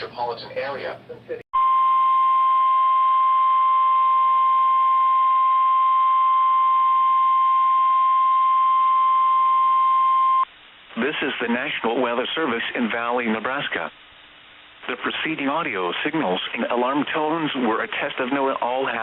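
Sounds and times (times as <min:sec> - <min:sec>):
steady high alarm tone: 0:01.6 - 0:10.5.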